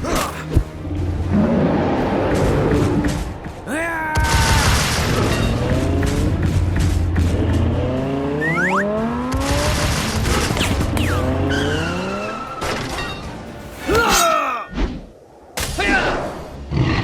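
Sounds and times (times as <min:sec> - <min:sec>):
background music: 0:00.0 - 0:14.8
car engine revving: 0:04.9 - 0:12.6.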